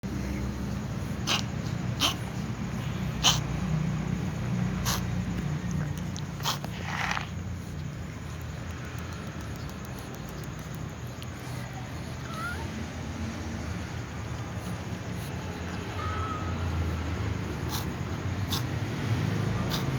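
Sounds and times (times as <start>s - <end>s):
low background hum: 0.0s - 19.9s
cat coughing: 1.2s - 2.3s, 19.6s - 19.9s
faint short meow: 12.2s - 12.7s, 15.9s - 16.7s.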